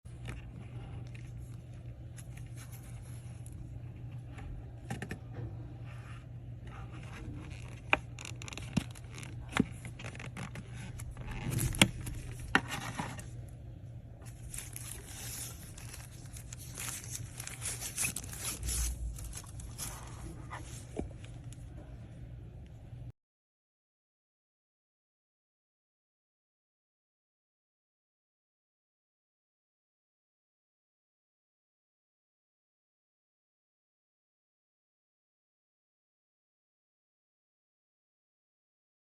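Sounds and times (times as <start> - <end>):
low electrical hum: 0.1 - 23.1
packaging rustling and crackling: 14.2 - 21.6.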